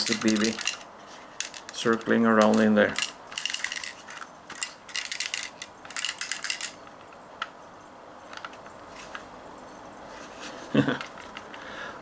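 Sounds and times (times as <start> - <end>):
plastic bb rattling in pistol: 0.0 - 7.5.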